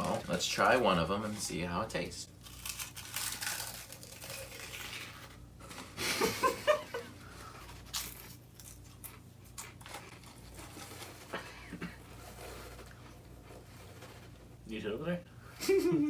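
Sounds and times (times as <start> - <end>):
crisps being crunched: 2.3 - 5.9, 7.2 - 14.4.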